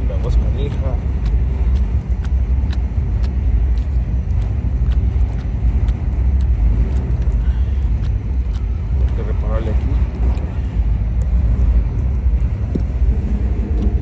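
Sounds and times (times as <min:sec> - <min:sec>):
propane torch roaring: 0:00.0 - 0:14.0.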